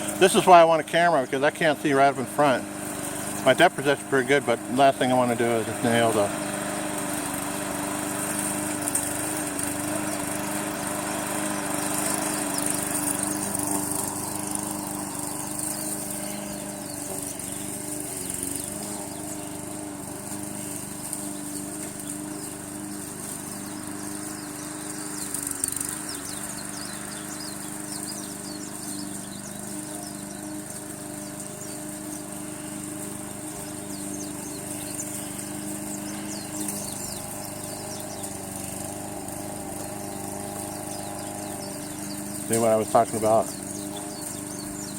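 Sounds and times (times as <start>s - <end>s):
lawn mower engine running: 0.0s - 44.9s.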